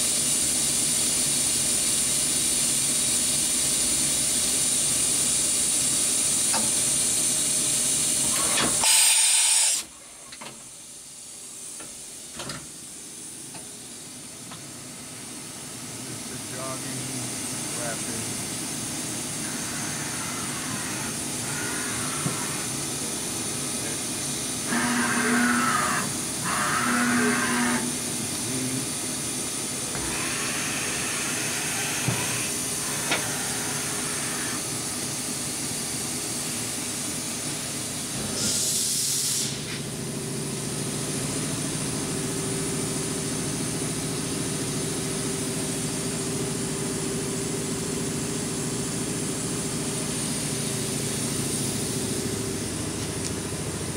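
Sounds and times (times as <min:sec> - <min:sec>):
steady machine hum: 0:09.8 - 0:38.5, 0:39.4 - 0:53.9
servo-drive whines: 0:30.0 - 0:34.4.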